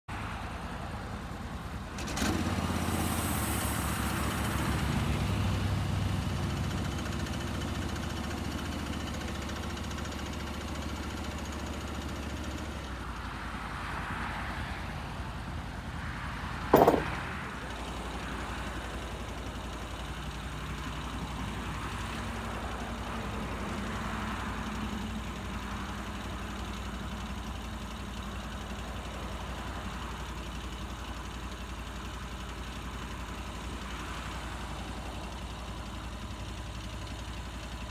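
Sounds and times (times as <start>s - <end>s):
loud clunk: 16.7s - 17.2s.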